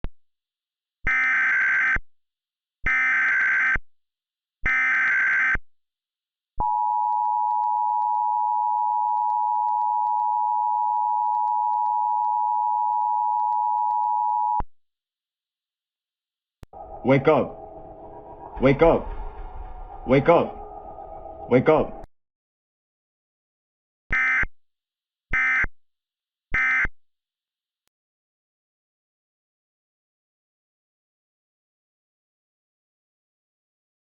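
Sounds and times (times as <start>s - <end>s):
steady alert attention tone: 16.8s - 22.1s.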